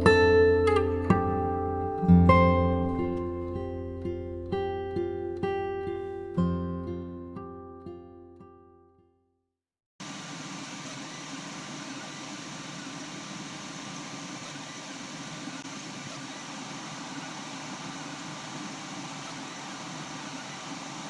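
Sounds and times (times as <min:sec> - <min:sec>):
fan whirring: 0:10.0 - 0:21.0.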